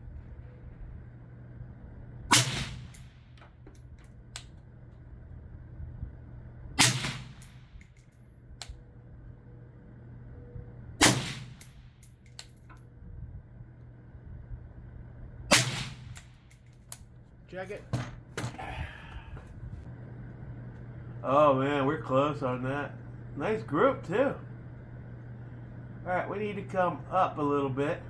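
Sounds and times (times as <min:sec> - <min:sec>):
suppressed rifle shots: 0:02.3 - 0:03.0, 0:06.8 - 0:07.5, 0:11.0 - 0:11.7, 0:15.5 - 0:16.2.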